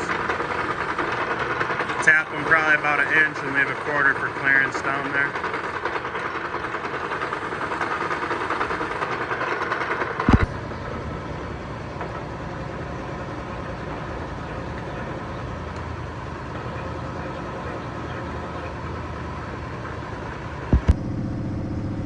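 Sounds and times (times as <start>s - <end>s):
milling machine drilling metal: 0.0s - 10.4s.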